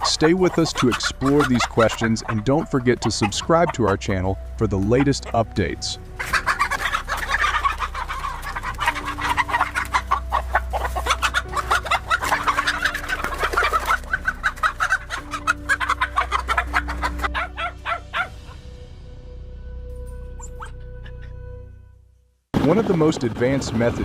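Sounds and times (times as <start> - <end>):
chickens clucking: 0.0 - 18.6.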